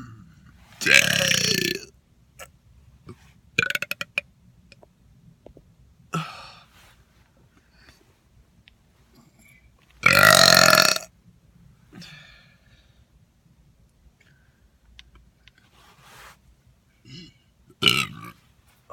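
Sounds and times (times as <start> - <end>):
person burping: 0.0 - 4.3, 6.1 - 6.7, 10.0 - 11.1, 17.0 - 18.4.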